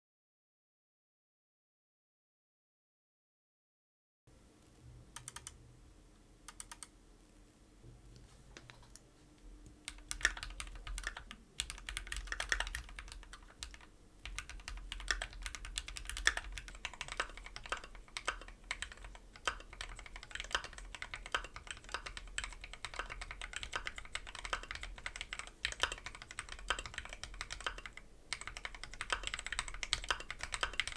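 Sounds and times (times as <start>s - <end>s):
mechanical keyboard typing: 5.2s - 5.6s, 6.5s - 6.9s, 9.9s - 30.9s.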